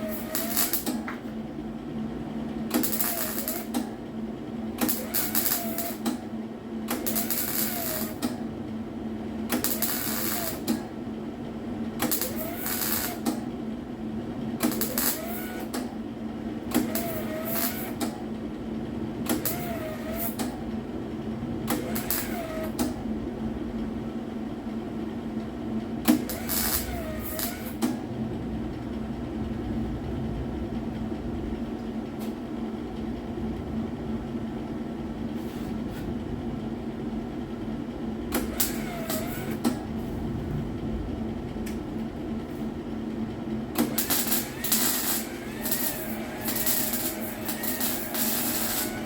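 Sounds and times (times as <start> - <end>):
welder crackling: 0.0 - 1.1, 2.7 - 3.9, 4.8 - 6.2, 6.9 - 8.4, 9.4 - 10.9, 12.0 - 13.4, 14.6 - 15.8, 16.7 - 18.0, 21.7 - 22.8, 26.1 - 27.9, 38.3 - 39.7, 43.8 - 49.0
steady hum: 0.0 - 49.0.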